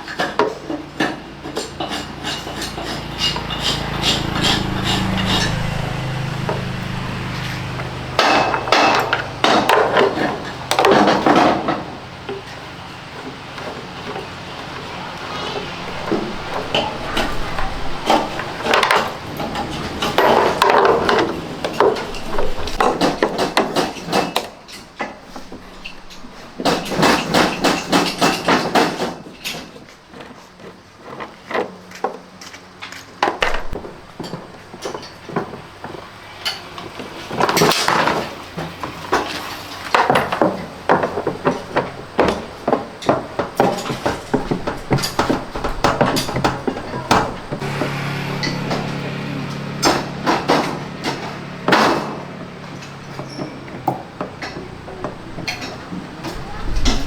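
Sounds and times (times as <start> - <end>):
rapid hammering on metal: 1.0 - 11.5.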